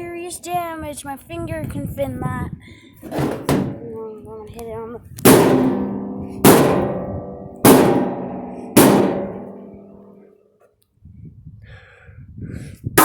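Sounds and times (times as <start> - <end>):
sledgehammer striking metal machine: 5.3 - 10.1.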